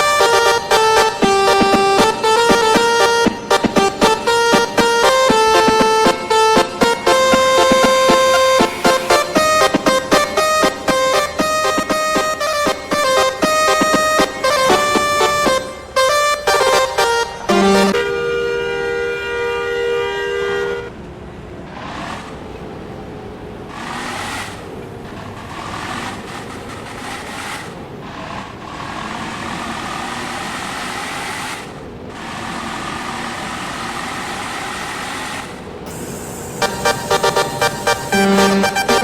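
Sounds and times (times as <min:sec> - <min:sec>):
multi-tone bus air horn: 0:00.0 - 0:21.0, 0:35.9 - 0:39.0
noisy background: 0:35.8 - 0:39.0.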